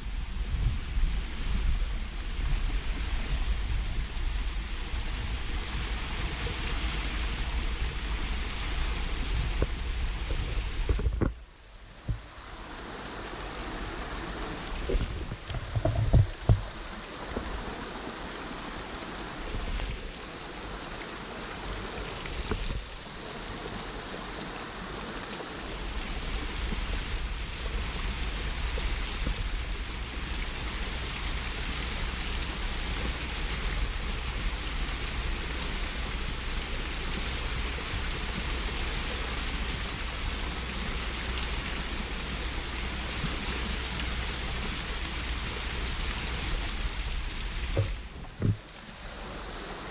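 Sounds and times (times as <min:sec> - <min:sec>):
low water rumble: 0:00.0 - 0:49.9
stream rushing over rock: 0:00.0 - 0:49.9.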